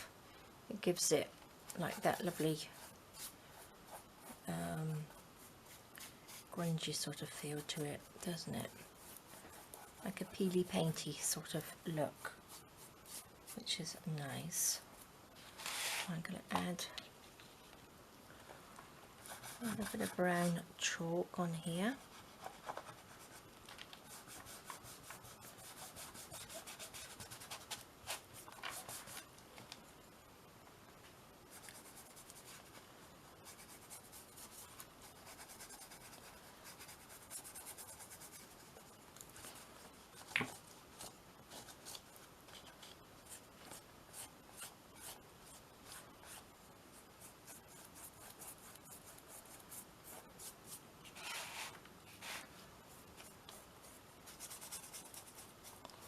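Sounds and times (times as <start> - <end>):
chalk pastel scratching on canvas: 1.8 - 10.7, 19.2 - 20.6, 21.9 - 29.2, 33.4 - 40.3, 41.5 - 56.0.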